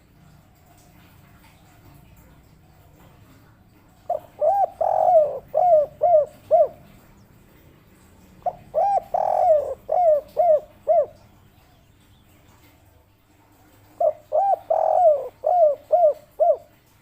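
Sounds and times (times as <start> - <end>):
dove cooing: 1.8 - 11.8, 13.8 - 17.0.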